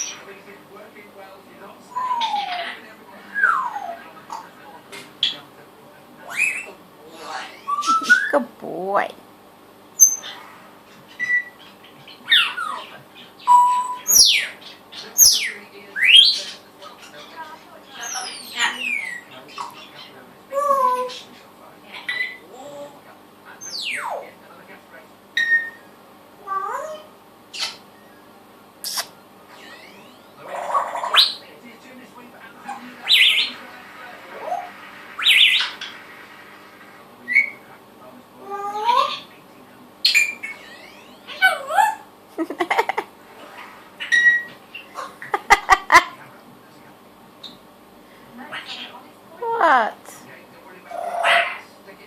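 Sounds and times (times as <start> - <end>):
parrot beep-like whistles: 7.6 - 8.4, 13.4 - 14.4, 29.6 - 30.3
bird warbling whistle: 13.4 - 14.4
parrot falling whistle-squawks: 29.5 - 30.3
bird chirp: 34.4 - 36.0.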